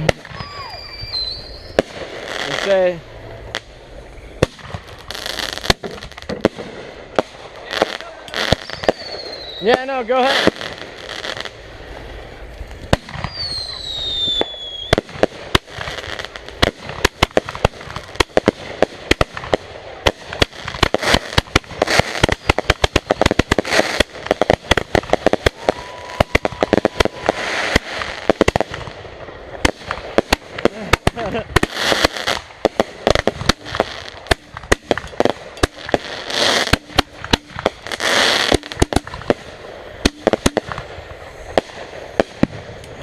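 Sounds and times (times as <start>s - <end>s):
rapid firework crackling: 0.0s - 43.0s
whistling firework: 0.0s - 43.0s
firework bang: 12.8s - 29.0s, 29.6s - 42.8s.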